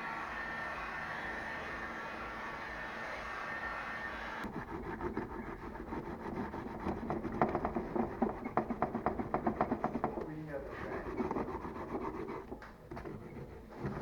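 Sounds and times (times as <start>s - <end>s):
rapid rubbing strokes: 4.4s - 13.9s.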